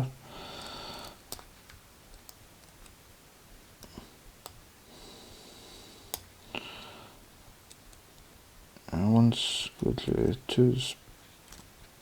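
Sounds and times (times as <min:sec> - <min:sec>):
soft breathy hiss: 0:00.0 - 0:01.4, 0:03.8 - 0:07.6.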